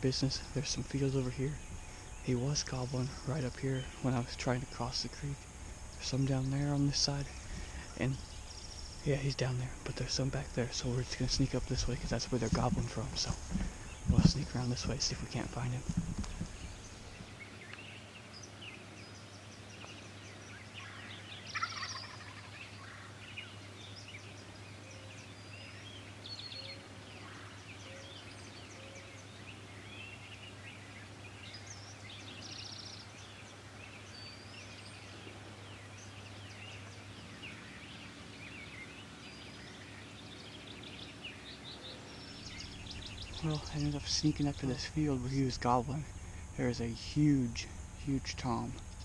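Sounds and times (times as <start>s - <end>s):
songbirds chirping: 0.0s - 49.0s
turkeys gobbling: 20.9s - 23.2s.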